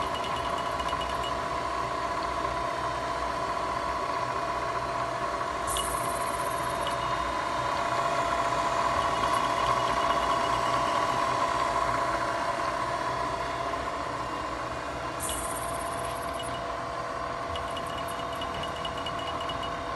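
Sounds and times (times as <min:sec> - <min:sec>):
milling machine whine: 0:00.0 - 0:19.9.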